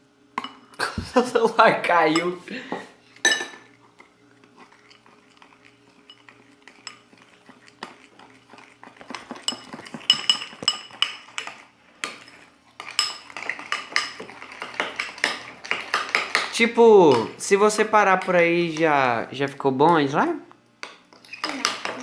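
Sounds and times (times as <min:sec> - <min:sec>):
spoon clinking in a bowl: 0:03.2 - 0:03.6, 0:04.9 - 0:08.0, 0:09.3 - 0:11.5.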